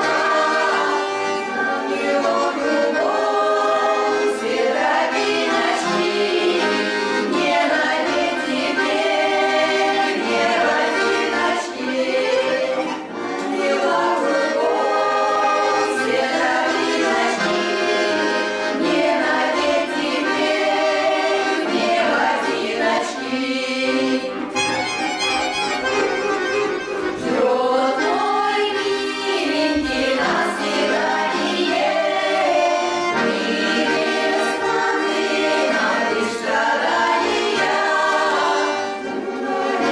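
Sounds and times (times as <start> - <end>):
choir singing: 0.0 - 24.9, 27.0 - 39.9
accordion: 0.0 - 39.9.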